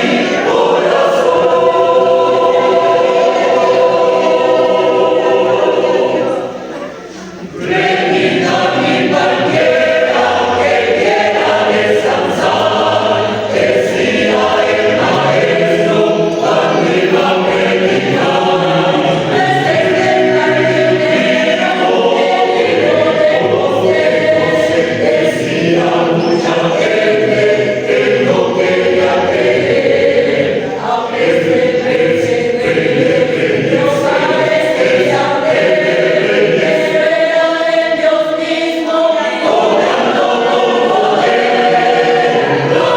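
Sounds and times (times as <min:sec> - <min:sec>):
choir singing: 0:00.0 - 0:42.9.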